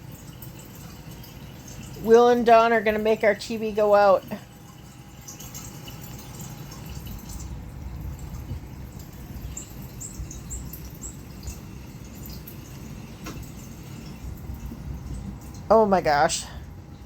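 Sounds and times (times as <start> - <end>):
low steady rumble: 0.0 - 17.0.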